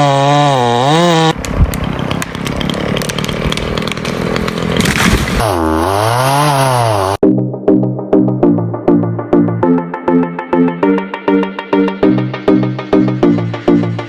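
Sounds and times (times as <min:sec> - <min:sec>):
chainsaw cutting wood: 0:00.0 - 0:07.2.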